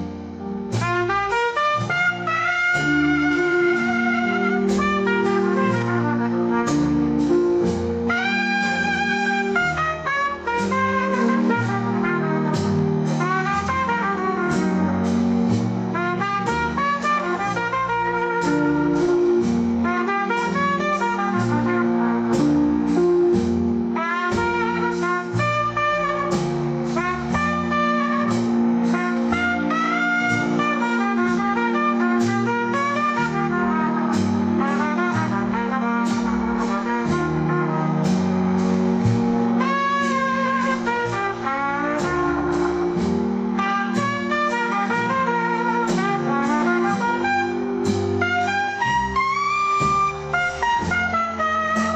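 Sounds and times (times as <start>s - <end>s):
drums: 0.0s - 51.9s
stepping bass notes: 0.0s - 51.9s
lead horn line: 1.2s - 6.3s.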